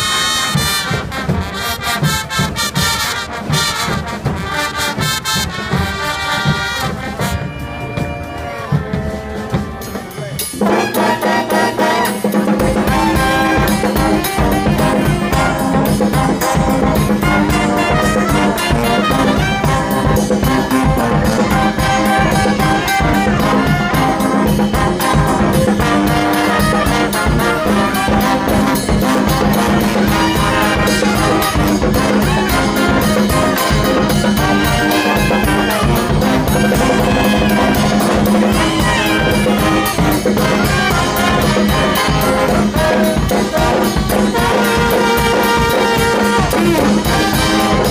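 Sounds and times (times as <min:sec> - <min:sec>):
brass band playing: 0:00.0 - 0:47.9.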